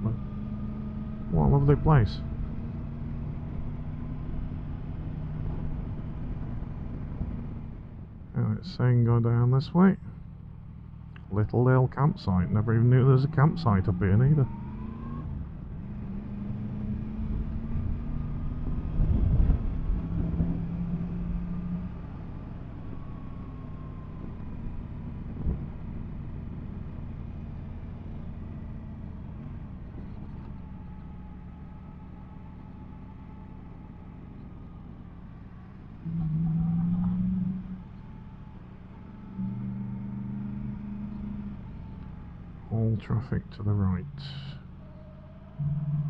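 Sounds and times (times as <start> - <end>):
road rumble: 0.0 - 46.0
wind: 0.0 - 46.0
motorcycle engine running: 44.7 - 46.0.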